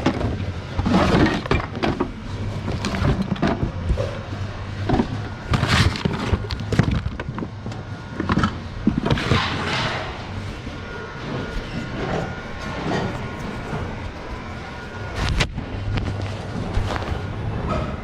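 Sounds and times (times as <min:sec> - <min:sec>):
goods clattering in bins: 0:00.0 - 0:07.5
steady low hum: 0:00.0 - 0:18.0.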